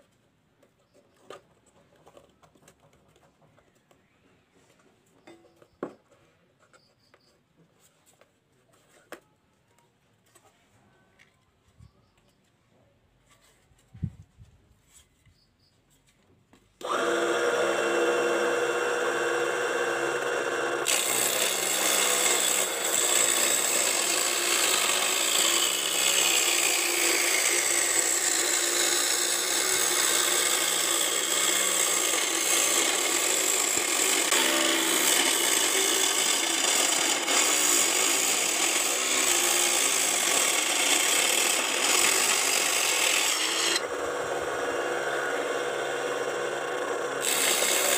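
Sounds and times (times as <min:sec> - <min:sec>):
saw blade cutting wood: 0:16.8 - 0:47.9
saw motor whine: 0:16.8 - 0:47.9.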